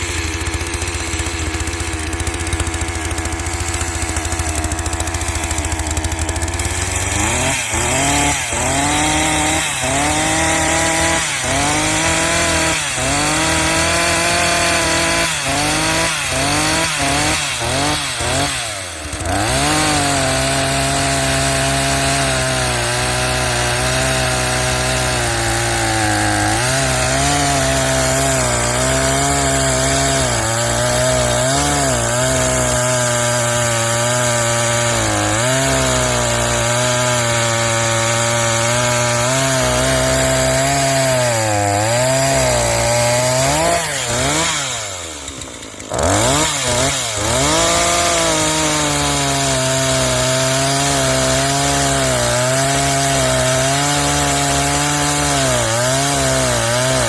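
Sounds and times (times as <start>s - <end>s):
chainsaw cutting a log: 0.0s - 57.0s.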